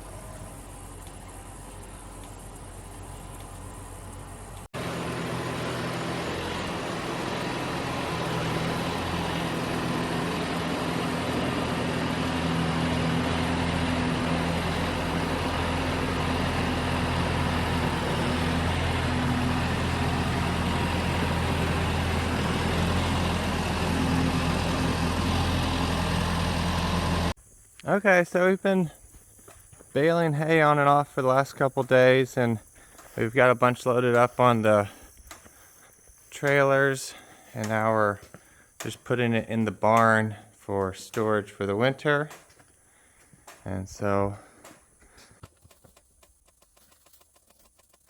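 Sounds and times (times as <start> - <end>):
vehicle engine running: 0.0 - 27.4.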